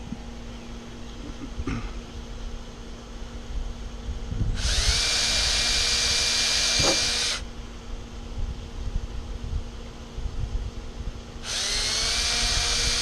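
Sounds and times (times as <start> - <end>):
power drill boring into wood: 4.6 - 7.4, 11.4 - 13.0.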